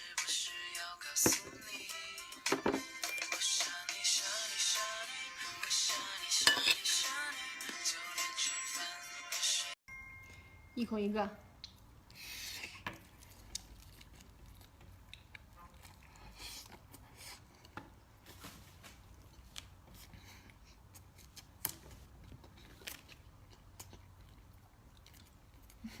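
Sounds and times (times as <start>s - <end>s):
chewing: 11.6s - 17.8s, 19.2s - 26.0s.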